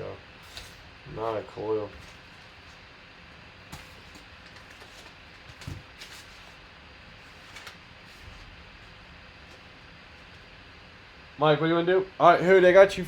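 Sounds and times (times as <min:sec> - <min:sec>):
faint room hum: 0:00.0 - 0:13.0.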